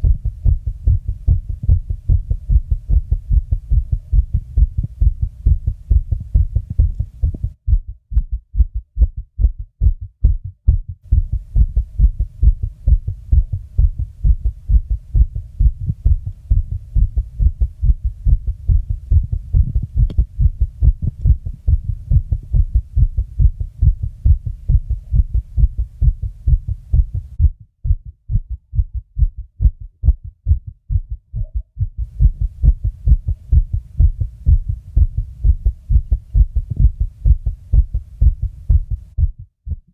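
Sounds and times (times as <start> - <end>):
fast heartbeat thumps: 0.0 - 39.9.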